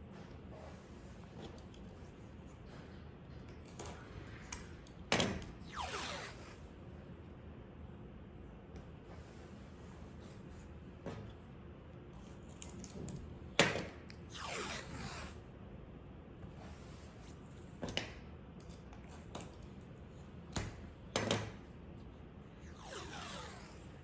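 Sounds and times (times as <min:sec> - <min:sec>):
tape peeling off roll: 0:05.3 - 0:06.7, 0:14.3 - 0:15.4.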